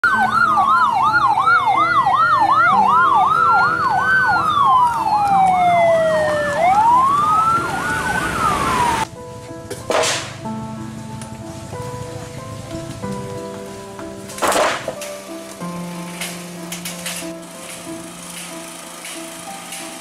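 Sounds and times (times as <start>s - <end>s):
siren fast yelp: 0.0s - 9.0s
siren slow wail: 0.0s - 9.1s.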